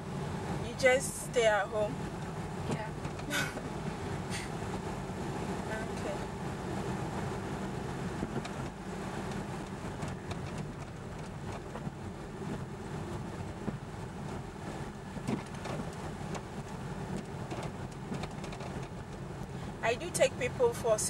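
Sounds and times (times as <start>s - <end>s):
car engine and tyre rumble: 0.0s - 21.0s
car knocking over bumps: 2.2s - 4.8s, 8.1s - 19.3s.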